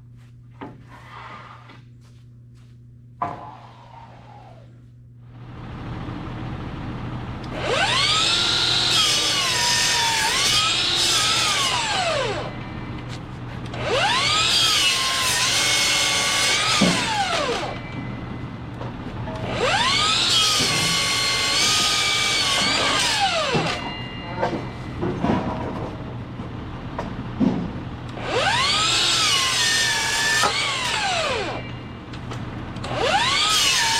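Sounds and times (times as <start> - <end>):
machine hum: 0.0 - 33.9
saw blade whining: 7.5 - 13.1, 13.8 - 18.1, 19.4 - 24.3, 28.2 - 31.9, 32.8 - 33.9.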